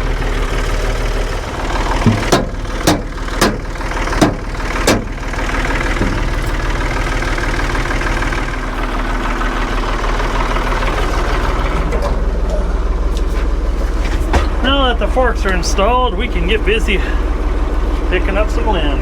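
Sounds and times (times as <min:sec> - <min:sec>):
tractor engine idling: 0:00.0 - 0:19.0
sharp metal knocks: 0:01.9 - 0:05.2, 0:06.0 - 0:06.5.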